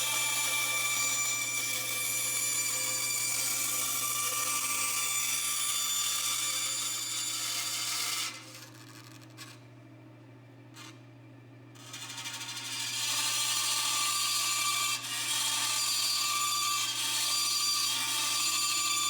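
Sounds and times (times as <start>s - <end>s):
power tool whining on wood: 0.0s - 8.8s, 11.8s - 19.0s
low steady hum: 8.8s - 11.8s.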